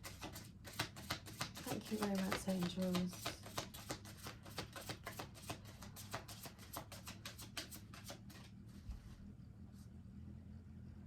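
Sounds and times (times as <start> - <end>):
cards being shuffled by hand: 0.0 - 8.6.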